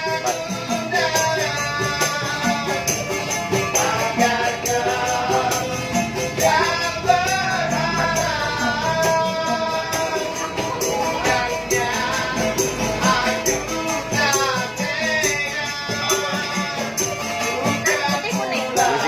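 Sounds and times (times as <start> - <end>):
steady percussion beat: 0.0 - 19.0
person singing long held notes: 4.7 - 16.9.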